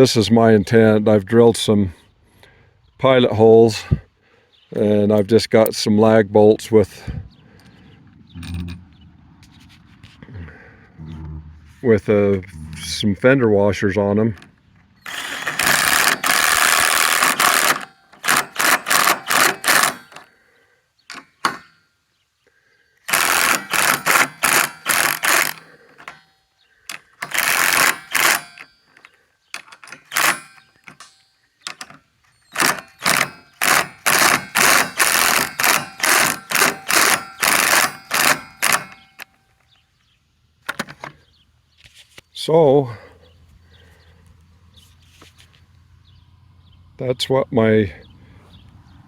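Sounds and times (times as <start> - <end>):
power driver rattling: 14.2 - 20.3, 21.1 - 21.8, 23.1 - 26.3, 26.9 - 39.4, 40.6 - 41.2.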